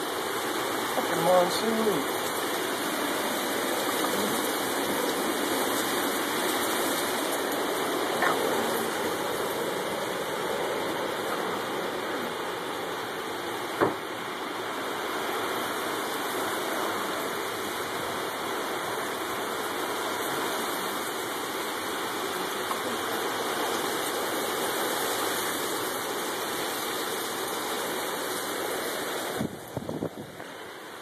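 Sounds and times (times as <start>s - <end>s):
heavy rain pouring: 0.0s - 31.0s
sharp knock: 13.8s - 14.0s.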